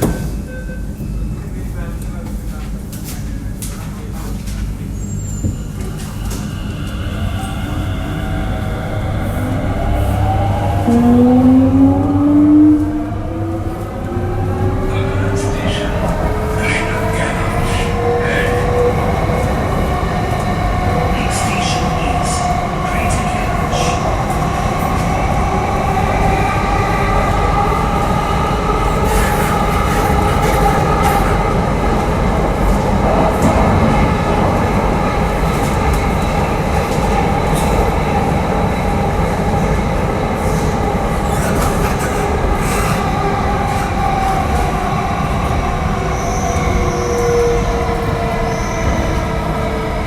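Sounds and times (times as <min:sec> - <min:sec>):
train rumbling on rails: 0:00.0 - 0:50.0
whining tones: 0:05.4 - 0:15.2.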